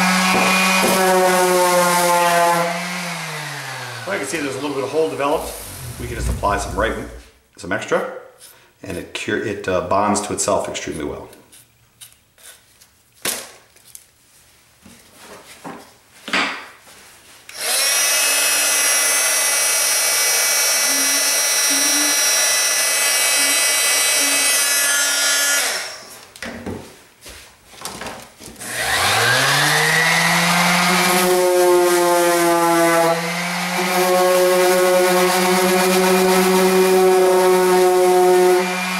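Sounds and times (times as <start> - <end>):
power tool motor whining: 2.0 - 4.2, 17.5 - 26.0, 38.4 - 38.9
motor spinning up: 5.2 - 7.2.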